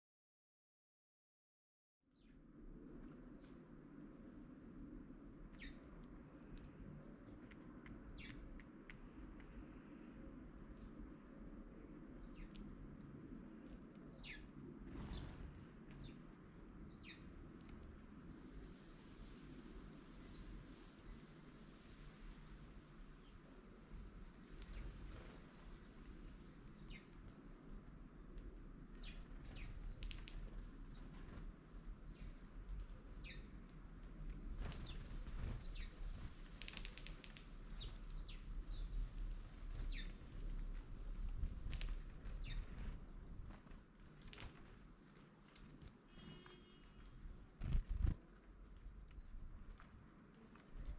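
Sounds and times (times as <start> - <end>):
low steady background noise: 2.1 - 50.9
small birds chirping: 3.0 - 4.4, 5.2 - 17.5, 23.1 - 27.4, 28.7 - 33.7, 34.5 - 43.4, 46.0 - 49.9
sharp clicks: 36.5 - 38.2.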